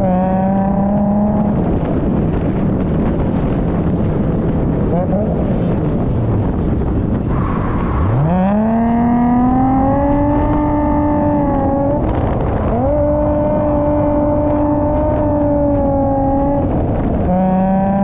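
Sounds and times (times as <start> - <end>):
car engine revving hard: 0.0 - 1.7, 7.4 - 18.0
tyre and wind noise: 0.0 - 18.0.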